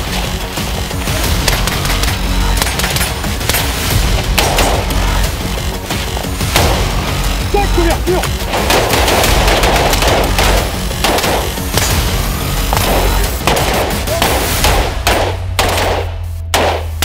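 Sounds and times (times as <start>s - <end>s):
rapid rifle fire: 1.2s - 5.2s, 8.4s - 17.0s.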